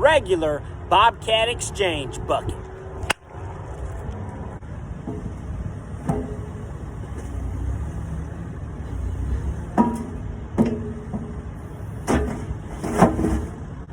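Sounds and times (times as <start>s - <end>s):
excavator engine idling: 4.6s - 13.9s
metal clank: 8.9s - 11.4s.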